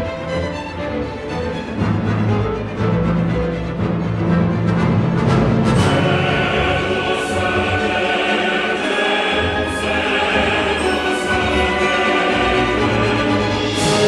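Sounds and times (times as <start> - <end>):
orchestral film music: 0.0 - 14.0
choir singing held chords: 5.6 - 14.0.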